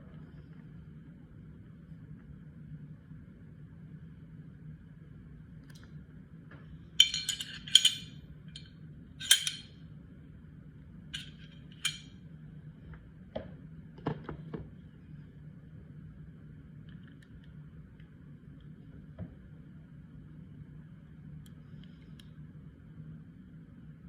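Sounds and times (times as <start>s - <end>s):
pistol parts clinking: 7.0s - 9.7s, 11.2s - 12.1s.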